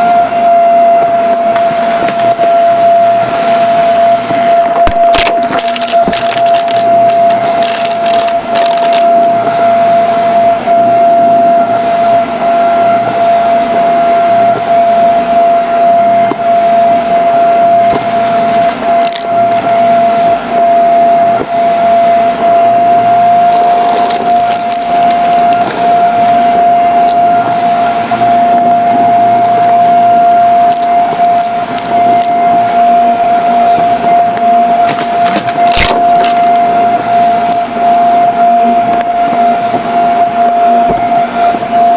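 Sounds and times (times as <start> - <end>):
vacuum cleaner whining: 0.0 - 41.9
debris crackling in vacuum: 1.3 - 9.8, 17.7 - 20.2, 23.2 - 33.4, 34.4 - 40.4.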